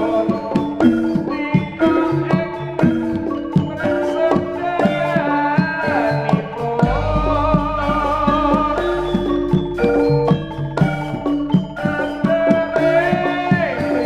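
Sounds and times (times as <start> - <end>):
hand drum strokes: 0.0 - 14.0
ringing metallophone notes: 0.0 - 14.0
wavering melody line: 0.0 - 14.0.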